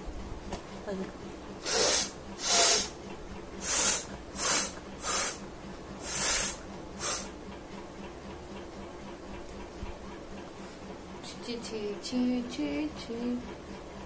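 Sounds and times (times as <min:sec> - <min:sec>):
person blowing nose: 0:01.6 - 0:02.9, 0:03.6 - 0:05.4, 0:06.0 - 0:07.3.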